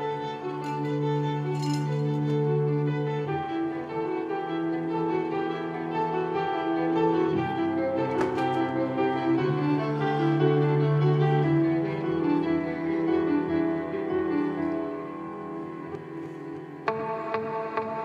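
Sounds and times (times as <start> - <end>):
bowed strings and piano music: 0.0 - 18.0.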